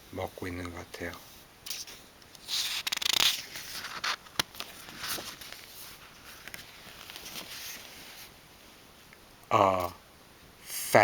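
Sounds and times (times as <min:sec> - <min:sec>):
rustling handling noises: 0:01.0 - 0:08.9.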